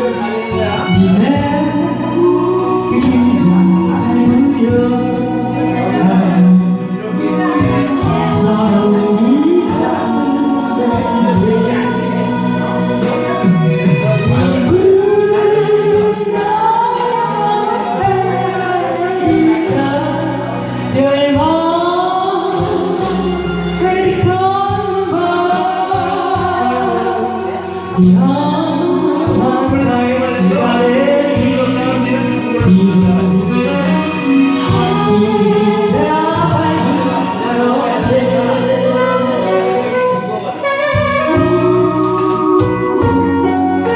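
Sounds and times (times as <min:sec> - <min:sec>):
instrumental accompaniment: 0:00.0 - 0:43.9
person singing ballad: 0:00.0 - 0:43.9.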